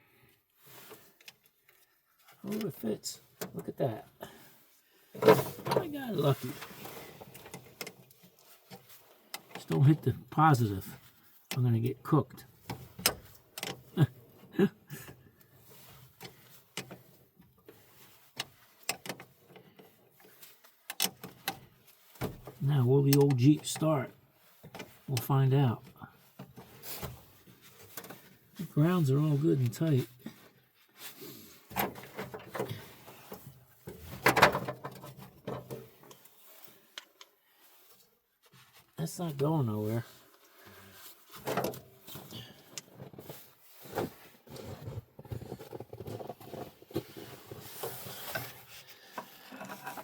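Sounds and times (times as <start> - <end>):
metal clamp clunking and rattling: 12.6 - 14.0, 20.8 - 23.3, 31.7 - 36.2.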